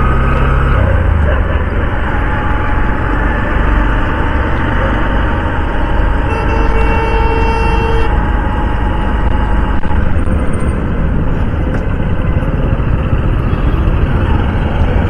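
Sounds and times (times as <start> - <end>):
motorcycle riding in traffic: 0.0 - 15.0
vehicle horn: 6.2 - 8.2.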